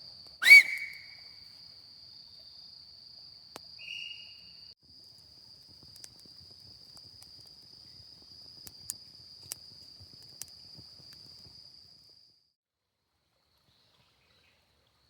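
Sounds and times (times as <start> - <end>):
insect high-pitched trill: 0.4 - 1.4.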